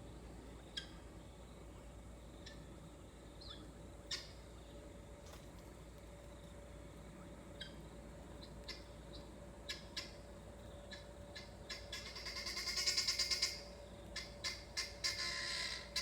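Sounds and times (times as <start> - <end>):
guinea fowl calling: 3.4 - 4.5, 7.6 - 7.8, 8.4 - 16.0.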